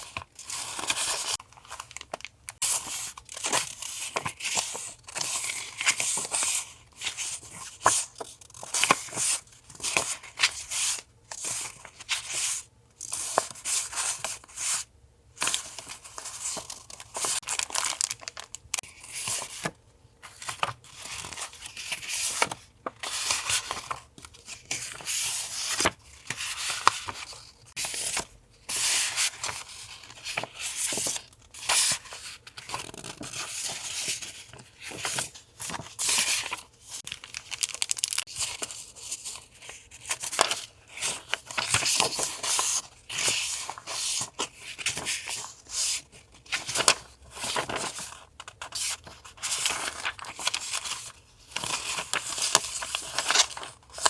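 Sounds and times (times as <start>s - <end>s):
paper and plastic rustling: 0.0s - 14.8s, 15.4s - 54.0s.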